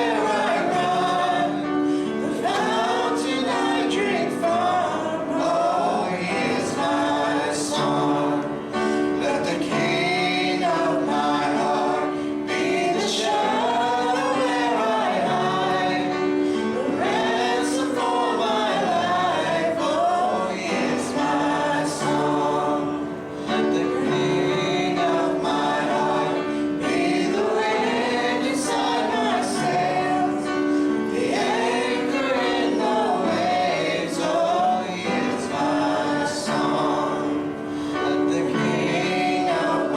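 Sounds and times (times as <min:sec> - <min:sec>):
congregation singing a hymn: 0:00.0 - 0:39.9.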